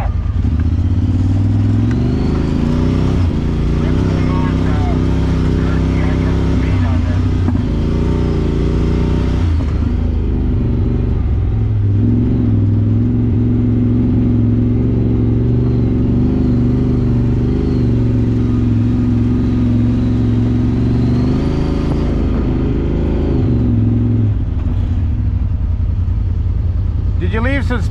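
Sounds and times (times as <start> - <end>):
utility vehicle engine running: 0.0 - 27.9.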